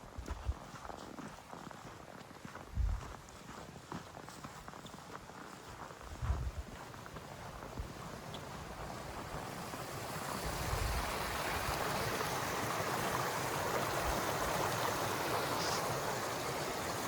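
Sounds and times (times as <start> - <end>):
soft footsteps: 0.0 - 9.6
running water rushing: 7.2 - 17.0.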